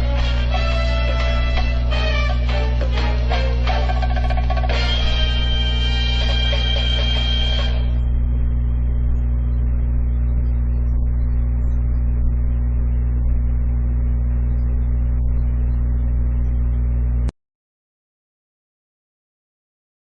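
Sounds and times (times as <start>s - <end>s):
music track: 0.0s - 8.0s
loud low hum: 0.0s - 17.3s.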